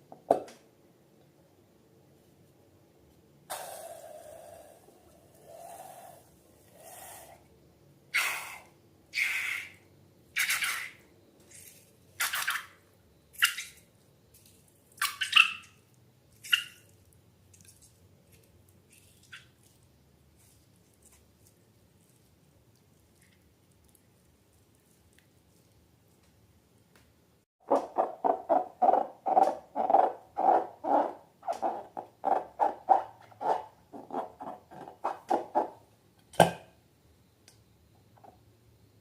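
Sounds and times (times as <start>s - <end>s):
slime squelching and dripping: 13.4s - 26.4s.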